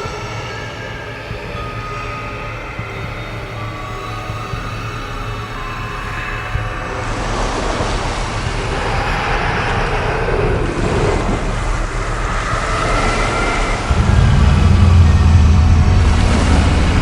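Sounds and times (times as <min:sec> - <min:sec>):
loud noisy rumble: 0:08.7 - 0:17.0
deeper heavier rumble: 0:09.6 - 0:17.0.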